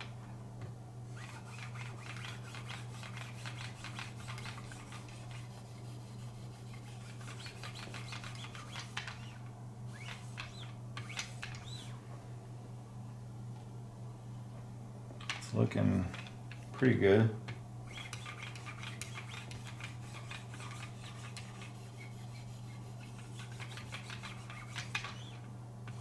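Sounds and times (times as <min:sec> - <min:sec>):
steady low hum: 0:00.0 - 0:26.0
knife blade scraping on sharpener: 0:01.2 - 0:05.5, 0:06.7 - 0:11.9, 0:17.9 - 0:26.0.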